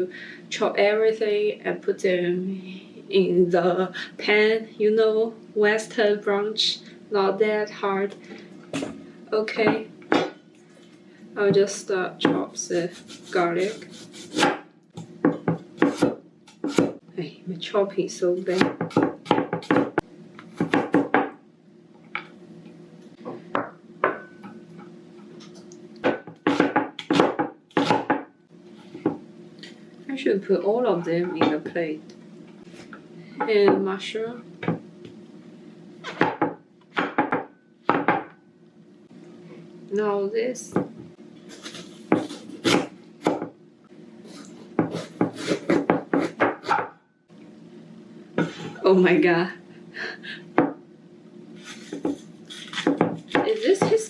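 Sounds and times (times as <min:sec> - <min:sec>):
steady low hum: 0:00.0 - 0:54.0
knife chopping on cutting board: 0:12.2 - 0:17.0, 0:18.5 - 0:21.3, 0:26.0 - 0:28.2, 0:42.1 - 0:43.5, 0:44.8 - 0:46.9, 0:51.9 - 0:54.0.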